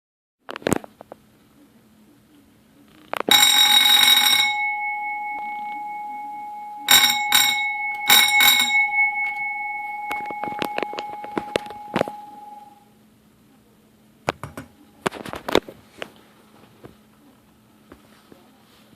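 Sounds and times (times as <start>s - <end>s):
fire alarm bell ringing: 3.3s - 12.8s.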